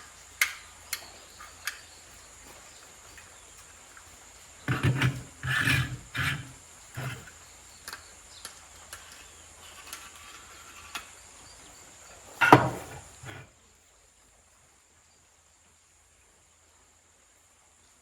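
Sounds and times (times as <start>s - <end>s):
rustling thump: 12.4s - 13.5s.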